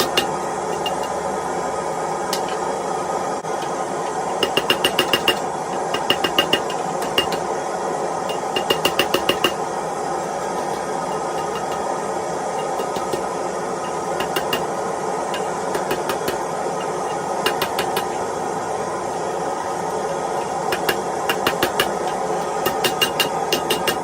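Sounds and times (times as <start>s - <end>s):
hammer striking steel on anvil: 0.0s - 1.2s, 4.3s - 7.5s, 8.3s - 9.7s, 10.6s - 11.9s, 12.5s - 18.2s, 20.4s - 24.0s.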